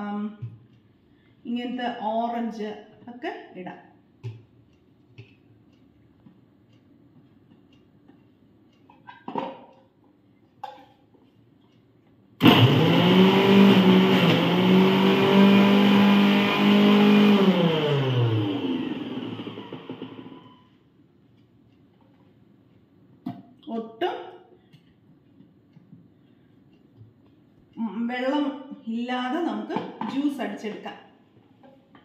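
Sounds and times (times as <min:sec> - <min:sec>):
mixer grinder motor whining: 0:12.4 - 0:20.6.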